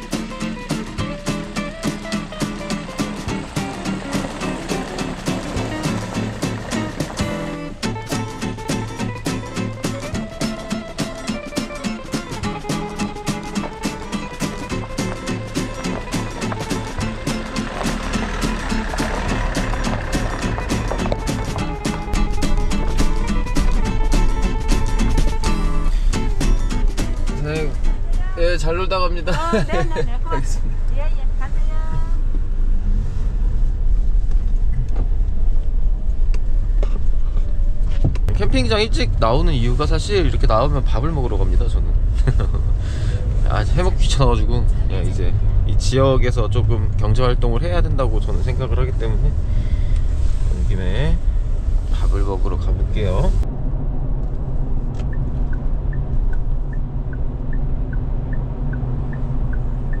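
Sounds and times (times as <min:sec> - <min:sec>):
turn signal ticking: 0:00.0 - 0:28.4, 0:54.7 - 1:00.0
pickup truck engine rumble: 0:00.0 - 1:00.0
road noise: 0:00.0 - 1:00.0.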